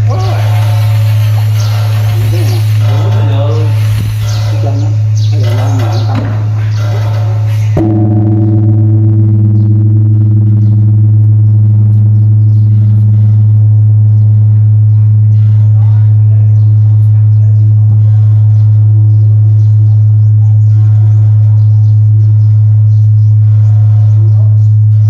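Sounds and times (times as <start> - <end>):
large bell ringing: 0.0 - 12.9.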